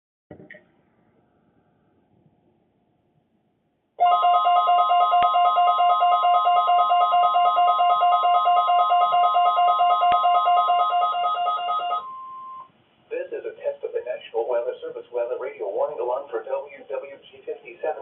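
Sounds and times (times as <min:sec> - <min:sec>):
steady alarm tone: 0:04.0 - 0:12.7.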